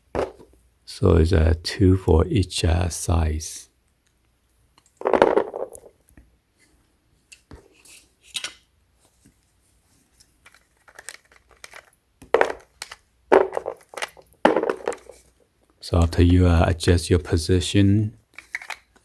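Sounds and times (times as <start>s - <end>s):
plastic and metal parts clattering: 10.3s - 15.4s, 18.3s - 19.0s.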